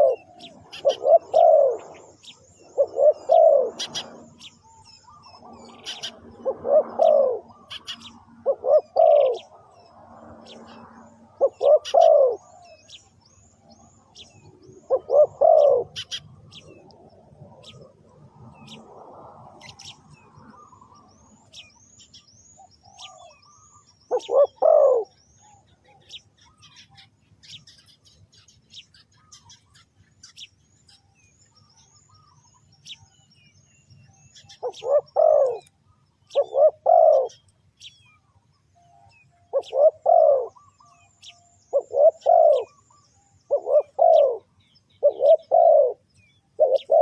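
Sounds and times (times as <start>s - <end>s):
dove cooing: 0.0s - 13.0s, 14.1s - 21.8s, 22.8s - 27.6s, 34.6s - 35.7s, 36.3s - 37.4s, 39.5s - 47.0s
small birds chirping: 0.0s - 47.0s.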